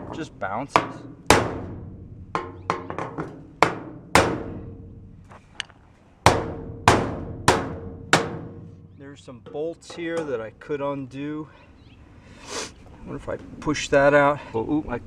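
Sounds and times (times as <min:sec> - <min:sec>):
hammer striking sheet steel: 0:00.0 - 0:04.8, 0:06.2 - 0:08.8.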